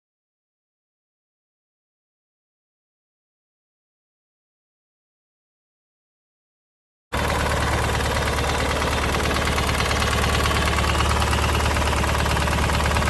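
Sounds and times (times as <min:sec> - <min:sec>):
engine idling through muffler: 0:07.2 - 0:13.0.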